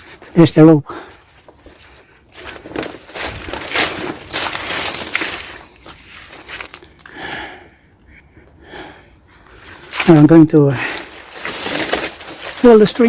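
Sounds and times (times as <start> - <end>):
crunching in dry vegetation: 0.0 - 7.5, 9.5 - 13.0
footsteps: 1.0 - 7.1, 9.6 - 13.0
rope handling: 1.2 - 7.2, 9.6 - 13.0.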